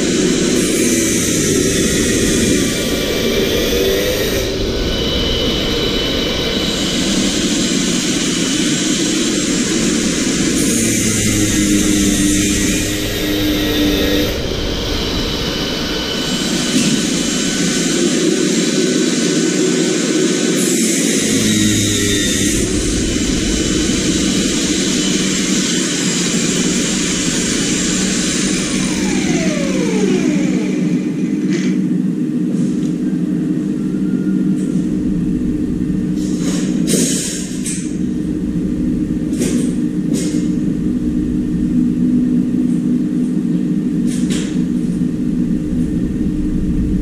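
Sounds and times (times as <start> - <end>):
loud rushing machine noise: 0.0 - 47.0.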